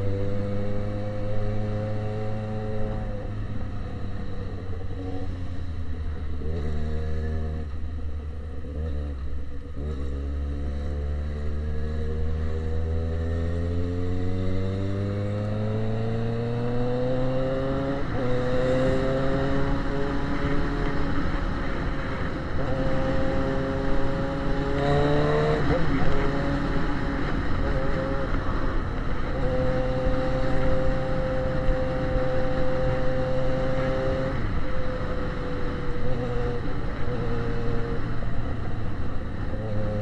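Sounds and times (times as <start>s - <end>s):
motorcycle engine revving: 0.0s - 40.0s.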